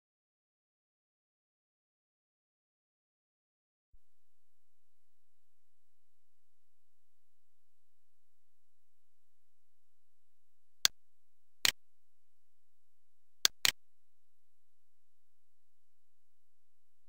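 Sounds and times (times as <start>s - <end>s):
computer clicks: 13.4s - 13.8s.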